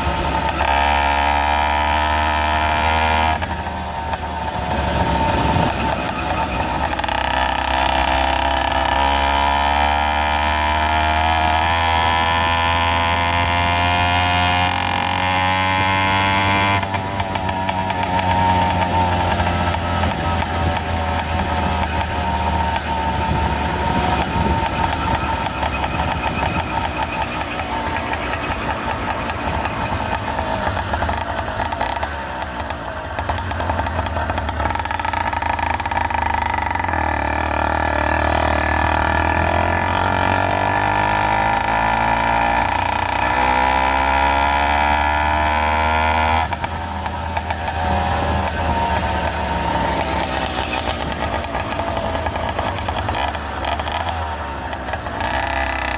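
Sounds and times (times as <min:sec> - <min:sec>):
motorized bicycle engine running: 0:16.8 - 0:44.6.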